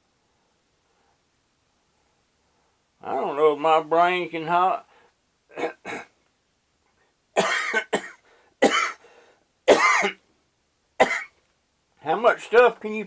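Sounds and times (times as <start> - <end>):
man coughing: 5.5 - 6.1, 7.4 - 9.0, 9.7 - 10.2, 11.0 - 11.3.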